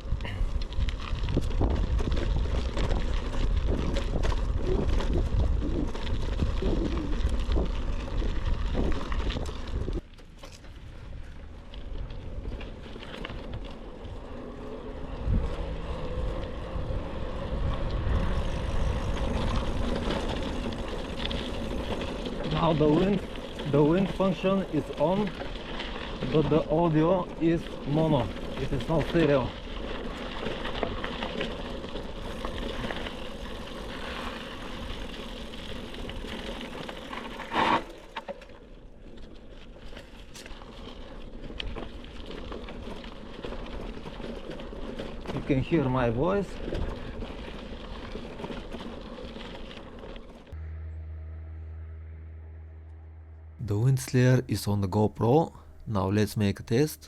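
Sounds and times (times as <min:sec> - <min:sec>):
wind buffeting microphone: 0:00.0 - 0:10.0, 0:15.0 - 0:22.5
bicycle clicks and rattles: 0:00.0 - 0:50.6.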